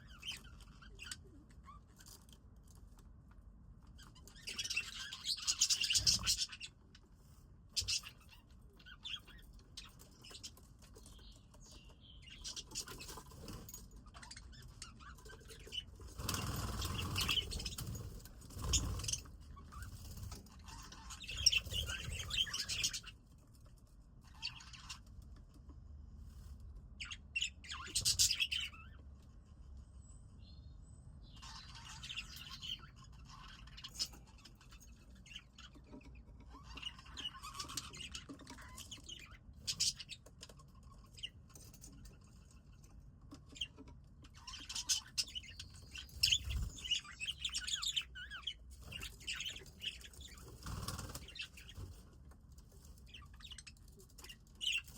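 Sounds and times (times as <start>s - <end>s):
budgerigars chirping: 4.0s - 6.8s, 7.7s - 23.1s, 24.2s - 25.0s, 27.0s - 29.0s, 31.2s - 42.5s, 43.4s - 52.0s, 53.0s - 54.9s.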